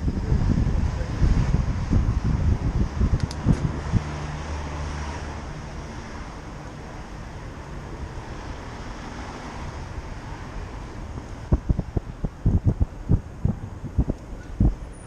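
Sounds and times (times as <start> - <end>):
low vehicle hum: 0.0 - 15.0
street noise: 0.0 - 15.0
wind rush while cycling: 0.0 - 15.0.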